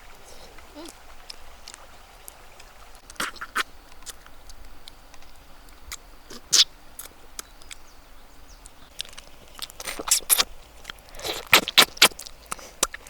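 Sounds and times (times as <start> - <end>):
wet smacking: 3.0 - 7.8, 8.6 - 13.0
person chewing and crunching food: 3.1 - 4.2, 8.9 - 13.0.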